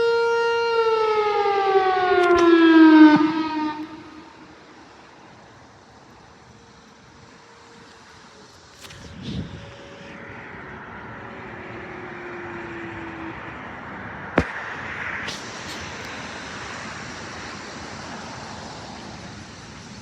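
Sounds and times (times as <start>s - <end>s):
distant warning siren: 0.0s - 20.0s
road traffic noise: 0.0s - 20.0s
sharp click: 8.8s - 9.1s, 14.4s - 16.2s.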